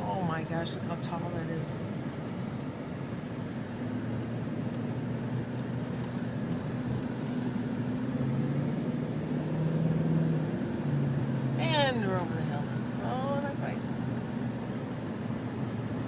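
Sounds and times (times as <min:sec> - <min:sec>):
car engine and road drone: 0:00.0 - 0:16.0.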